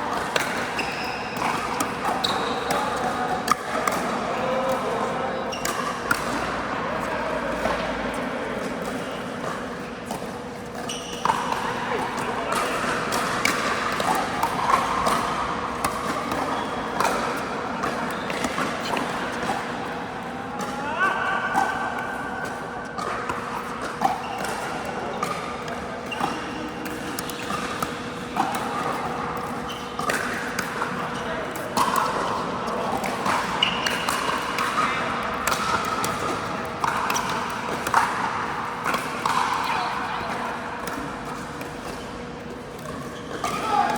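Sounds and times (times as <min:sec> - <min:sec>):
ball bouncing on court: 0:00.2 - 0:04.0, 0:33.0 - 0:39.9
shoe squeak: 0:00.7 - 0:01.4, 0:02.2 - 0:02.7, 0:10.8 - 0:11.2, 0:29.7 - 0:30.0, 0:33.6 - 0:34.0.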